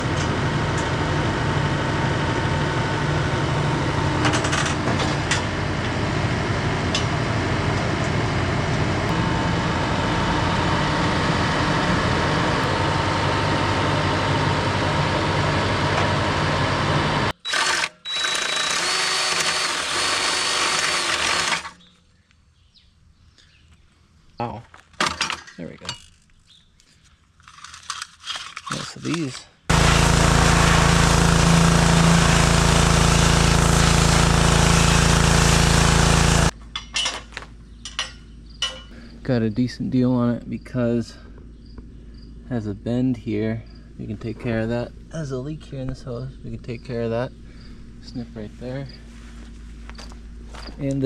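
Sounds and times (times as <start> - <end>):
motor droning: 0.0 - 21.8, 29.7 - 36.5
power tool whirring: 9.1 - 21.9, 29.7 - 36.5.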